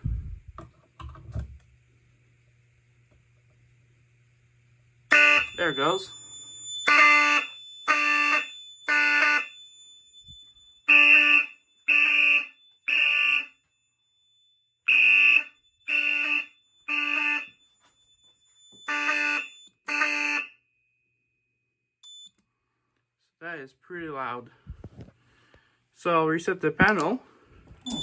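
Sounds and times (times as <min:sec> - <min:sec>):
buzzy fire alarm horn blasts: 0:05.1 - 0:13.8, 0:14.8 - 0:20.7.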